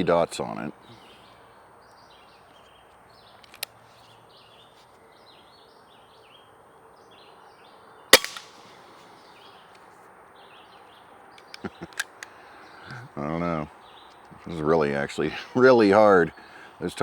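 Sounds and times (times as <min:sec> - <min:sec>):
air rifle shot: 0:08.1 - 0:08.8.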